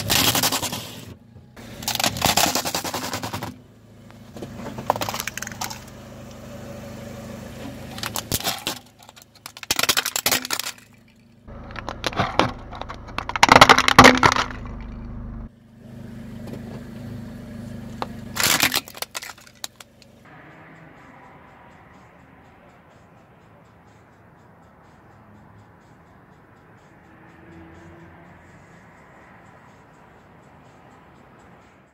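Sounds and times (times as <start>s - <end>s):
tyre crushing objects: 0.0s - 3.6s, 7.6s - 10.9s, 11.5s - 15.1s, 18.4s - 19.9s
low engine hum: 0.0s - 9.7s, 10.6s - 31.2s.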